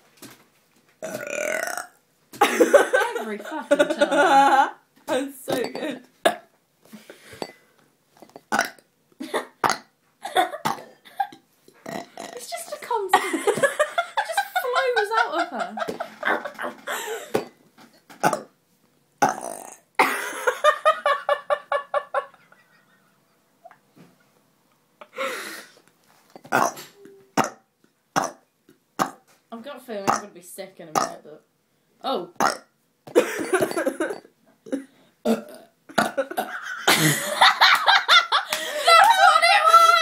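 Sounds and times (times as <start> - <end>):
woman belching: 1.0 - 2.0, 5.5 - 6.5, 8.5 - 8.8, 10.6 - 12.5, 18.2 - 18.5, 19.2 - 19.9, 26.4 - 27.6, 28.2 - 28.4, 30.1 - 30.3, 31.0 - 31.2, 32.1 - 32.7, 33.6 - 36.5.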